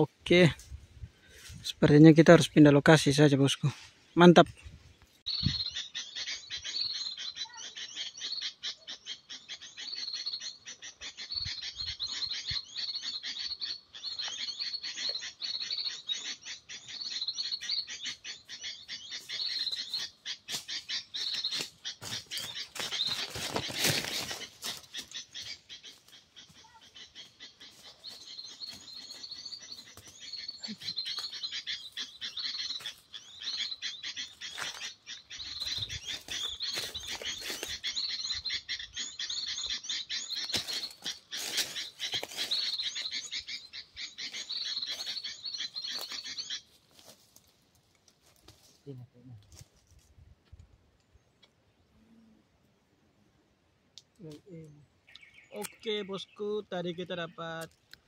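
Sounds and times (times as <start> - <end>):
high-pitched bird chirping: 5.2 - 46.7, 55.1 - 57.7.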